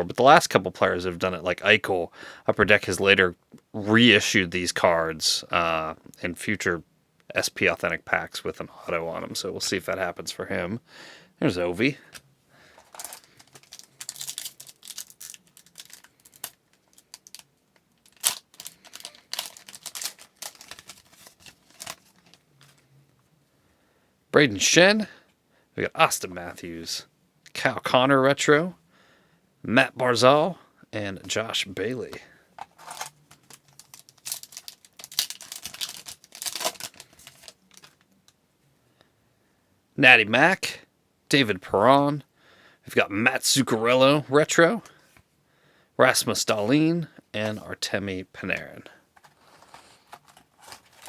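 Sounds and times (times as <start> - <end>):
cards being handled: 12.1 - 17.4, 18.0 - 22.9, 32.1 - 38.0, 49.2 - 51.0
wrapper tearing and crinkling: 12.8 - 22.8, 32.6 - 38.0, 49.2 - 51.0.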